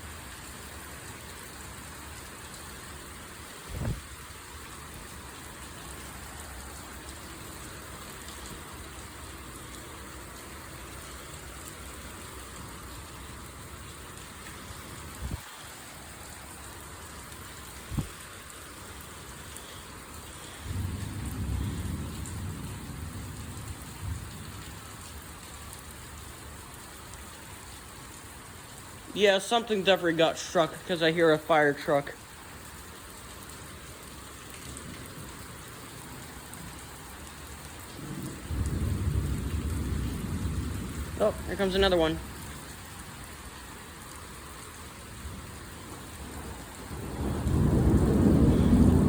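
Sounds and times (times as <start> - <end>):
heavy rain: 0.0 - 49.0
thunder rumble: 20.6 - 25.0, 37.9 - 42.5, 46.2 - 49.0.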